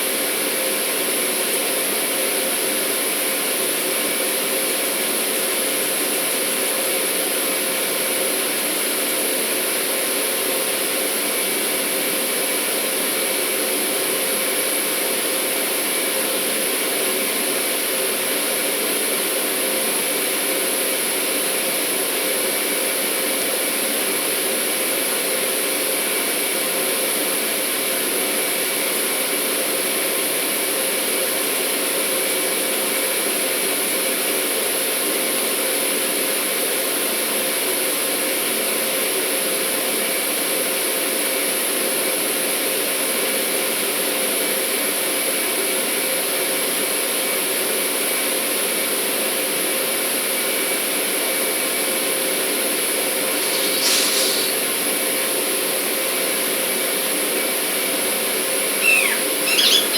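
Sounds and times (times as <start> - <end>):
industrial machinery hiss and hum: 52.7 - 58.1.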